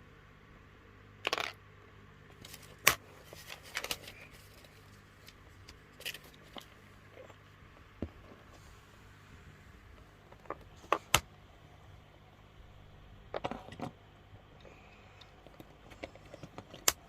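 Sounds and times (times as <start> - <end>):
plastic bricks clicking and rattling: 1.2 - 1.6.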